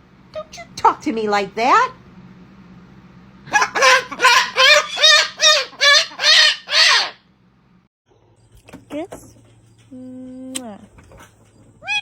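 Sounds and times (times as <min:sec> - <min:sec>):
parrot cackling: 0:03.4 - 0:07.3, 0:11.8 - 0:12.0.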